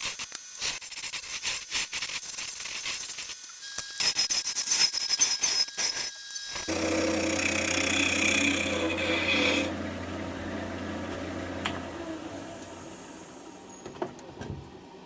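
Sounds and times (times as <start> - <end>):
turning tool scraping wood: 6.7 - 13.0
lathe motor humming: 6.7 - 13.7.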